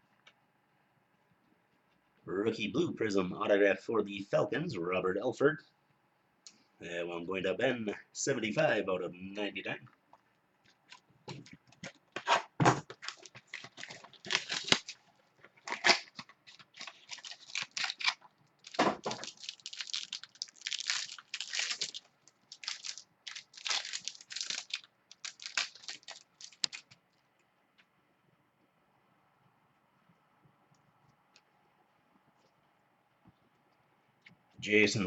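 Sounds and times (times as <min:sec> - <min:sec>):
wrappers tearing and crinkling: 0:12.9 - 0:27.0.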